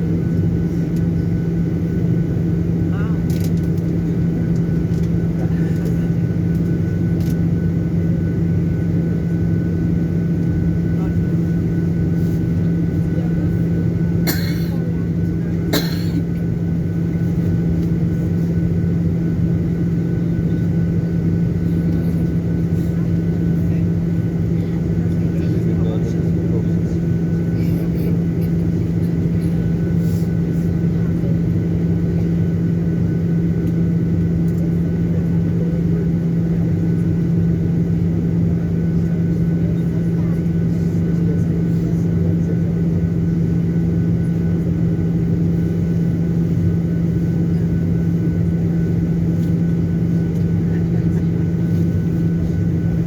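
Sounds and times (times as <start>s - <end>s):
aircraft cabin engine hum: 0.0s - 53.0s.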